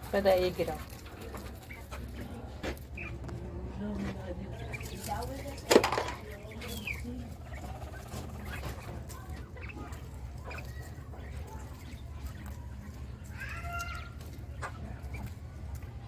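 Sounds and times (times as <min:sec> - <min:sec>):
poultry calling softly: 0:04.4 - 0:15.7.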